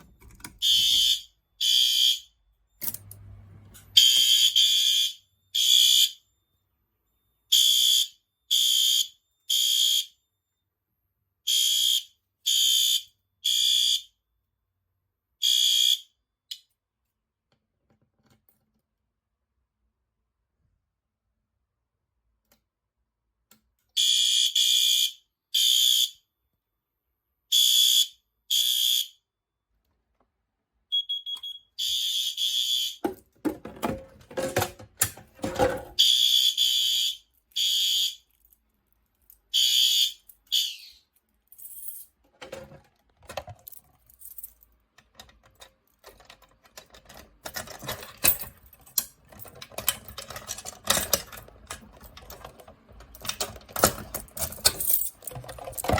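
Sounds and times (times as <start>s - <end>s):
fire alarm horn blasts: 0.6s - 2.4s, 3.9s - 6.3s, 7.5s - 10.2s, 11.4s - 14.2s, 15.4s - 16.2s, 24.0s - 26.2s, 27.5s - 29.2s, 30.9s - 33.0s, 36.0s - 38.2s, 39.5s - 40.9s.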